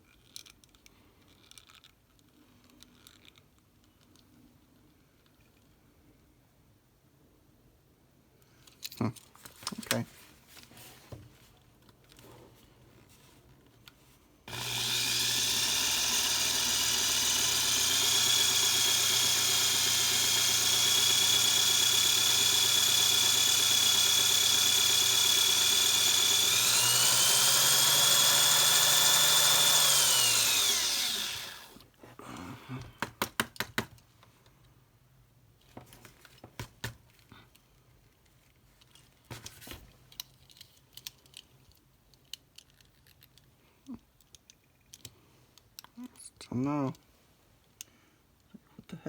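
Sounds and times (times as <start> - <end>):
power drill whining: 14.5 - 31.8.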